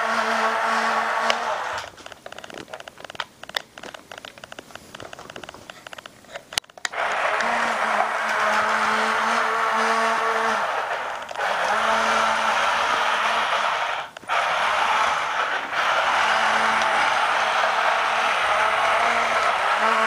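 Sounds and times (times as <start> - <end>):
toy tank motors whirring: 0.0 - 4.4, 5.0 - 20.0.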